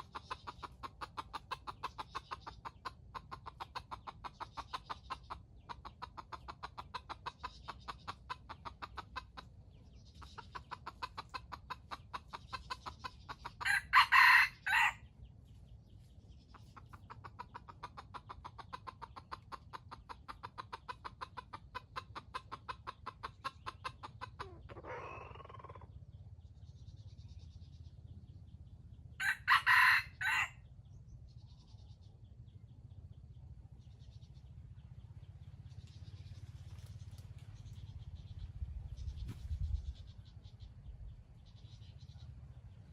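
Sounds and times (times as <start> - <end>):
fast pulsing bird call: 0.0 - 15.2, 16.5 - 42.9
rooster crowing: 13.6 - 15.0, 29.2 - 30.6.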